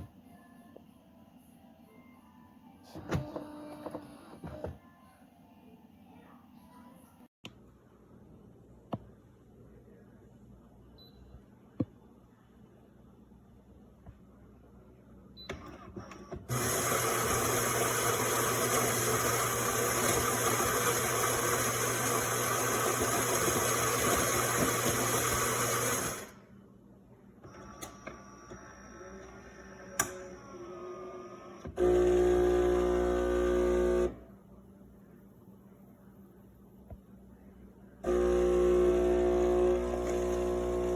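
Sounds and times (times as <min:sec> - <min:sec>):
grinder grinding coffee beans: 0:16.5 - 0:26.3, 0:31.8 - 0:34.1, 0:38.1 - 0:40.9
pump buzzing loudly: 0:16.5 - 0:26.3, 0:31.8 - 0:34.2, 0:38.1 - 0:40.9
quiet clicks and whirring: 0:27.4 - 0:34.2, 0:38.0 - 0:40.9.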